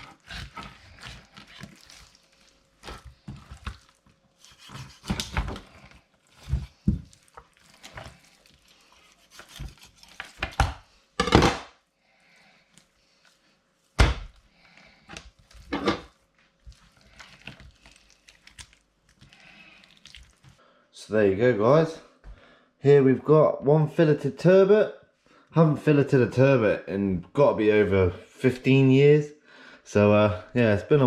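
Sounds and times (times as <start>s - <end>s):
knife and fish scraping board: 4.4s - 5.7s, 8.9s - 10.5s.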